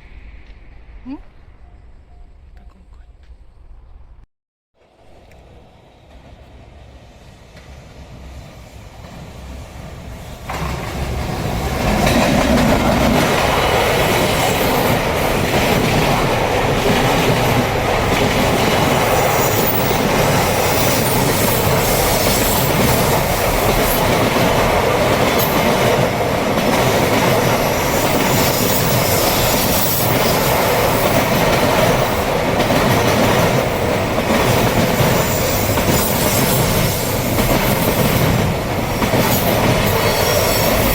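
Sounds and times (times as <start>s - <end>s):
freight train rumbling past: 0.0s - 4.2s, 4.8s - 40.9s
wheels clickety-clack on rails: 9.0s - 40.9s.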